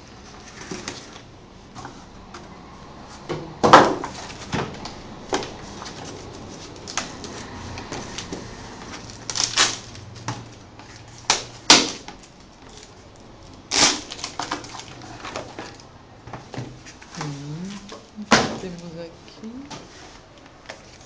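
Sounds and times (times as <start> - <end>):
packaging rustling: 4.1 - 15.9.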